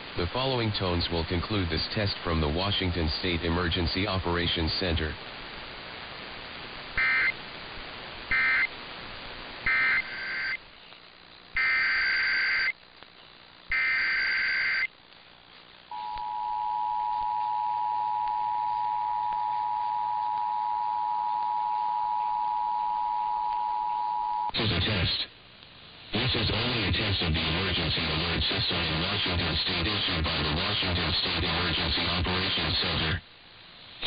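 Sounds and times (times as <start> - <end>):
warbling two-tone data bursts: 7.0 - 7.4, 8.3 - 8.7, 9.7 - 10.6, 11.6 - 12.8, 13.7 - 15.0.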